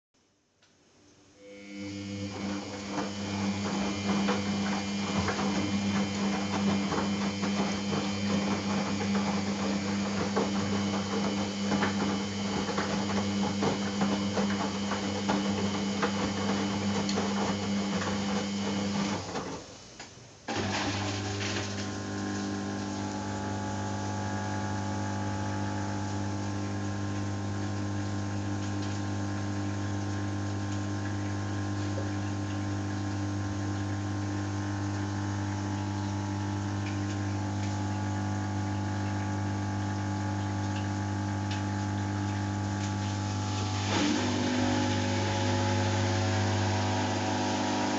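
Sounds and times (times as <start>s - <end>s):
washing machine motor humming: 1.4s - 47.9s
drum tumbling laundry knocks: 3.0s - 19.6s.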